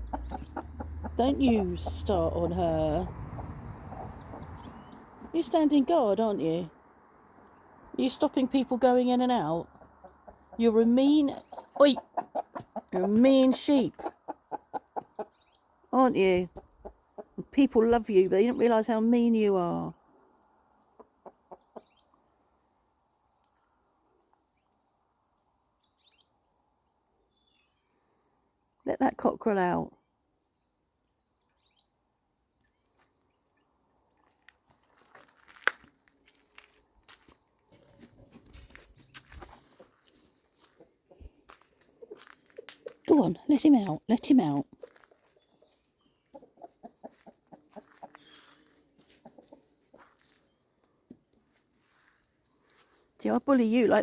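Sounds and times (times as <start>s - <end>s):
chickens clucking: 0.0s - 5.0s, 9.4s - 15.5s, 16.5s - 17.5s, 20.8s - 22.2s, 38.4s - 43.0s, 43.8s - 50.2s.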